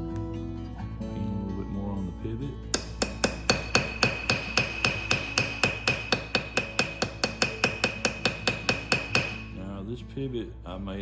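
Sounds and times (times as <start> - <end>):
small hammer tapping metal pin: 2.8 - 9.5.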